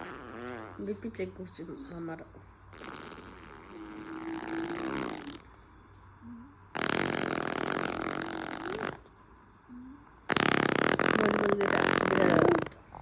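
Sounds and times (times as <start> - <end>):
baby blowing raspberries: 2.7 - 5.4, 6.8 - 9.0, 10.3 - 13.0.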